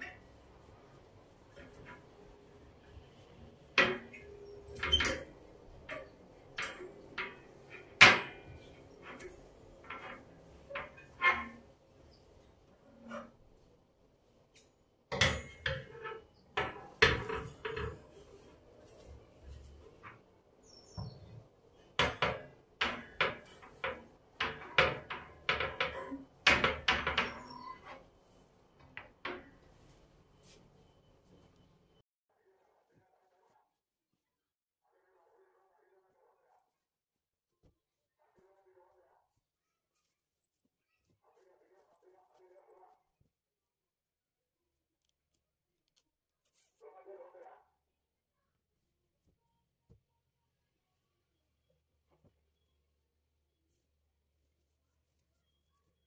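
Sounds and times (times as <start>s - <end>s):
hard objects knocking and clicking: 21.0s - 27.9s.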